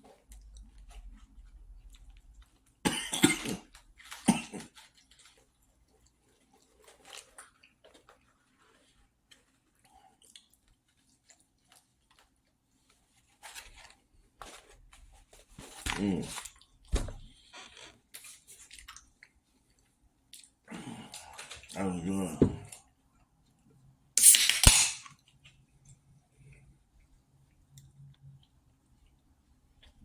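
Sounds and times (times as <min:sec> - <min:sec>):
soft chewing and mouth sounds: 0:00.0 - 0:02.8, 0:03.6 - 0:24.0, 0:25.2 - 0:30.0
person coughing loudly: 0:02.9 - 0:03.6, 0:04.2 - 0:04.7.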